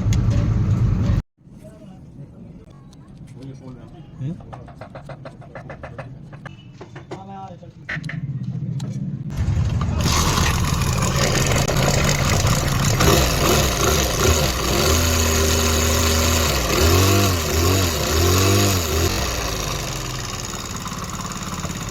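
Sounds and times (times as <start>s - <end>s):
motorcycle engine revving: 7.9s - 21.9s.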